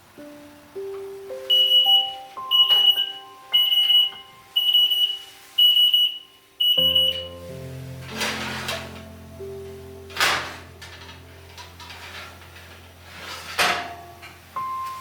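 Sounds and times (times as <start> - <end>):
soft background music: 0.0 - 15.0
timer beeping: 1.5 - 7.4.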